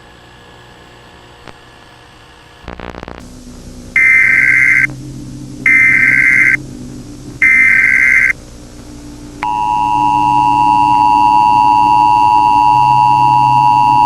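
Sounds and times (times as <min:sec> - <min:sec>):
low steady hum: 0:02.7 - 0:14.0
two-tone attention signal: 0:04.0 - 0:04.9, 0:05.7 - 0:06.6, 0:07.4 - 0:08.4, 0:09.4 - 0:14.0
warbling data bursts: 0:04.0 - 0:04.9, 0:05.6 - 0:06.6, 0:07.4 - 0:08.4.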